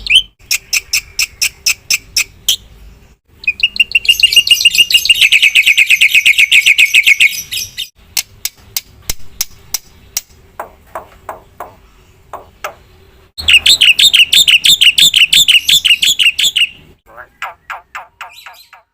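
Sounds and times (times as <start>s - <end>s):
bird clicks and calls: 8.1s - 10.4s, 17.2s - 18.9s
bird chattering calls: 12.4s - 18.9s.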